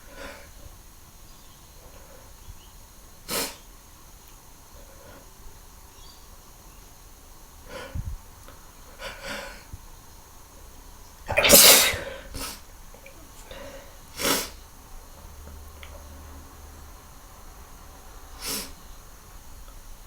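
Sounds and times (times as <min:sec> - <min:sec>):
person sneezing: 0:11.3 - 0:12.2.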